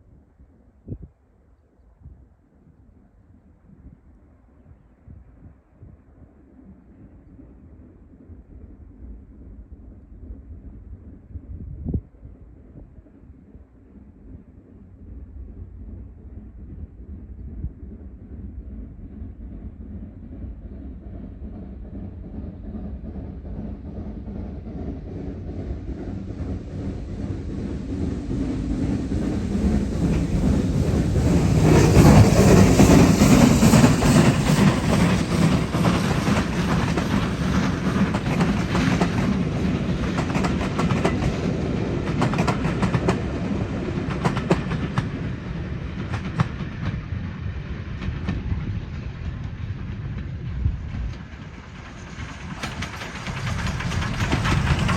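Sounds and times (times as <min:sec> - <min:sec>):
train passing: 0:03.3 - 0:54.9
train wheels clicking over rail joints: 0:29.0 - 0:54.9.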